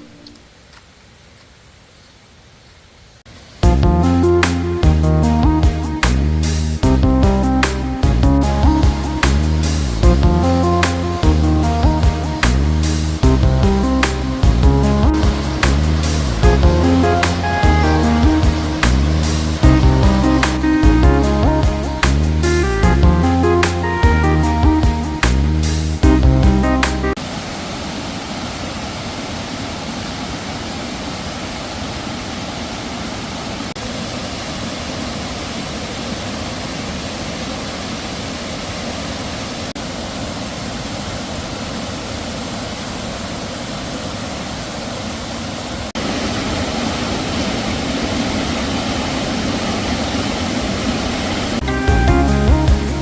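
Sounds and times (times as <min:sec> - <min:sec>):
steady rushing noise: 0:03.3 - 0:37.3.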